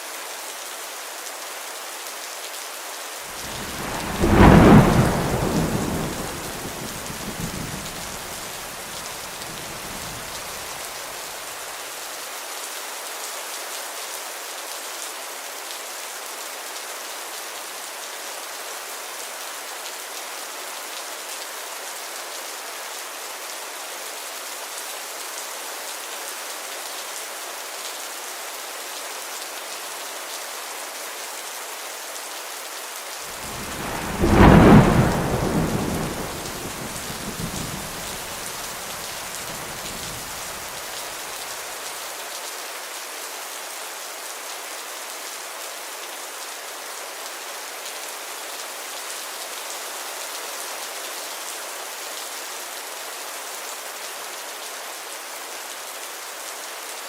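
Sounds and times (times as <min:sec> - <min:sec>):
heavy rain: 0:00.0 - 0:57.0
thunderclap rumbling: 0:03.4 - 0:08.8, 0:09.4 - 0:10.6, 0:33.3 - 0:40.8.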